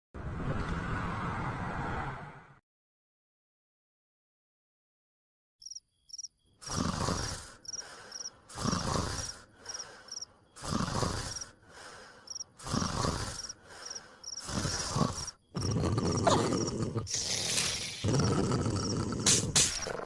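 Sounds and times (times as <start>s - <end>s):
crickets chirping: 5.6s - 20.0s
cartoon snoring: 6.6s - 20.0s.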